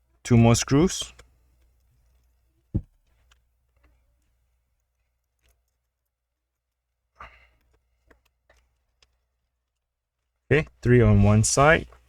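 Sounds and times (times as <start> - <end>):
dull knock: 2.8 - 3.0.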